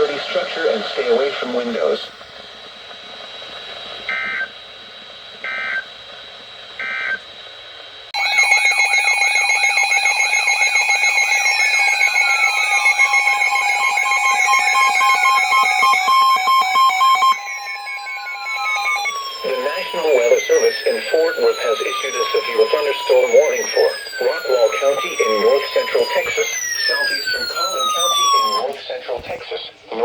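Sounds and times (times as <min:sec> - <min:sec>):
warbling electronic alert tone: 0:08.2 - 0:28.7
short data bursts: 0:08.2 - 0:29.2.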